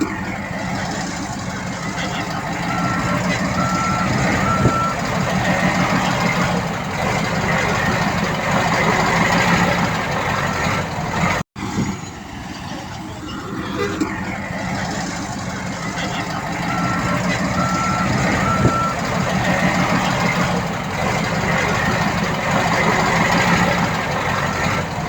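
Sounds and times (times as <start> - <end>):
heavy diesel machinery running: 0.0 - 25.0
reversing alarm beeps: 2.6 - 5.1, 16.6 - 19.0.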